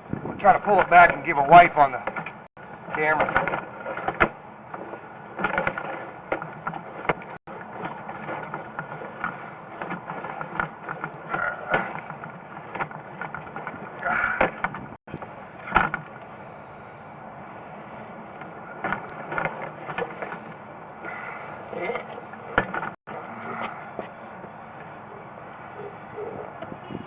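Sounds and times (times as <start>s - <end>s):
cable scraping in drain: 0.4s - 15.0s
cable clicks knocks and rattles: 0.4s - 16.3s, 22.3s - 23.0s.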